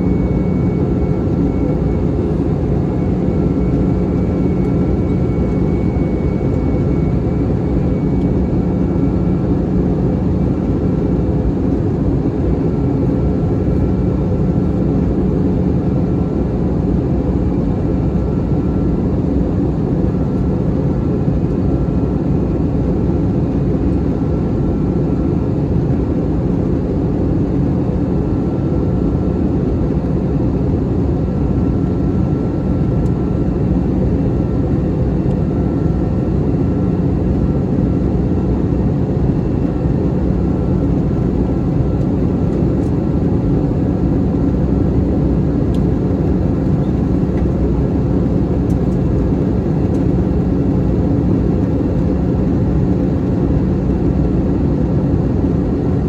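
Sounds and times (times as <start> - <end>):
airliner cabin drone: 0.0 - 56.0
constant low hum: 0.0 - 56.0.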